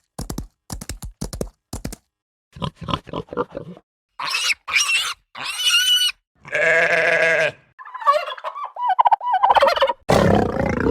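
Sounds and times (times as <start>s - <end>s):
animal bleat: 4.2s - 7.7s.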